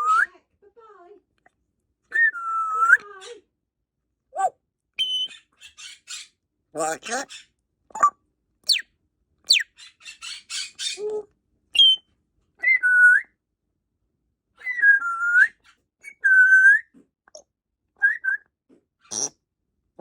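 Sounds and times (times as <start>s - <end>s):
parrot squawking: 4.4s - 8.1s, 9.5s - 11.1s, 19.0s - 19.3s
parrot whistling: 5.0s - 5.4s, 9.5s - 9.7s, 11.8s - 12.0s.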